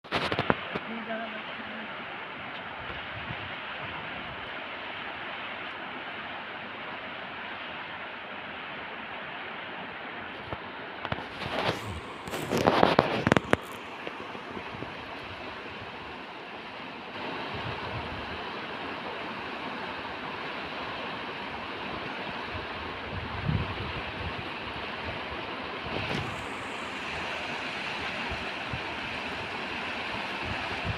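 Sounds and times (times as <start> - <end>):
lake water washing: 0.0 - 30.9
steady rushing noise: 0.0 - 30.9
wind buffeting microphone: 2.6 - 4.5, 11.1 - 16.2, 17.4 - 18.5, 21.9 - 30.9.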